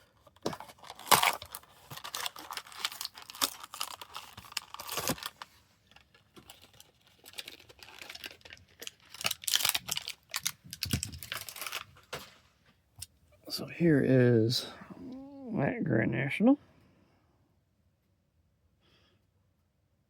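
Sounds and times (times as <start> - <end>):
plastic and card package tearing: 0.0 - 12.3.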